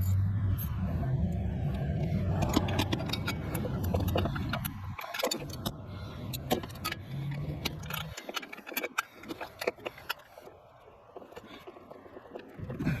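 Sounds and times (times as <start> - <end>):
low rumble: 0.0 - 7.9.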